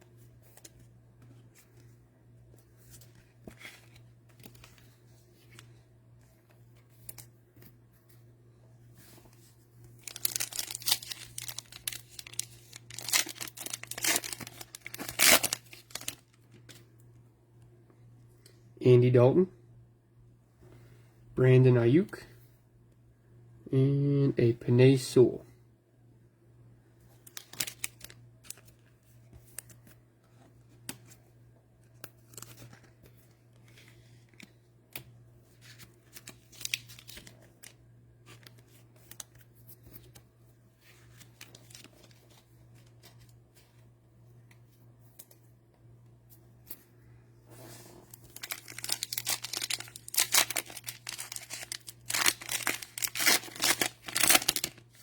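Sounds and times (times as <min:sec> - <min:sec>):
cellophane wrapper tearing and crinkling: 0:10.0 - 0:16.5, 0:27.2 - 0:28.7, 0:36.2 - 0:37.7, 0:48.2 - 0:55.0.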